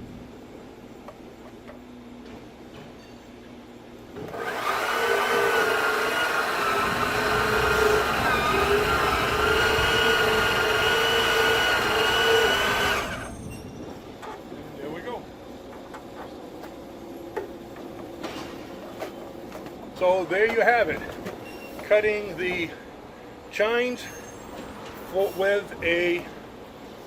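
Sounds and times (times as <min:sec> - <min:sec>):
band saw cutting wood: 0:04.3 - 0:13.3.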